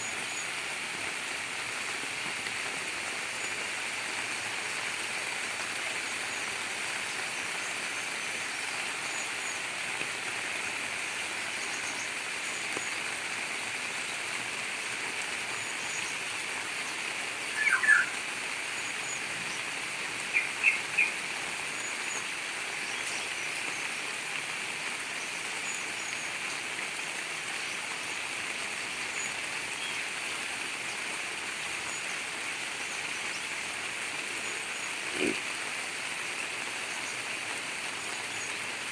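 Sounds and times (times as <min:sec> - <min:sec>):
gurgling running water: 0:00.0 - 0:38.9
steady rain: 0:00.0 - 0:38.9
birds chirping: 0:34.4 - 0:35.4.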